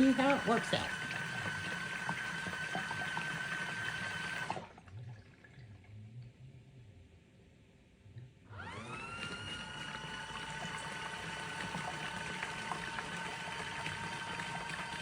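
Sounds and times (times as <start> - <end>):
washing machine motor whine: 0.0 - 6.0, 8.5 - 15.0
water sloshing in washing machine: 0.0 - 6.0, 8.6 - 15.0
faint low hum: 4.7 - 8.6.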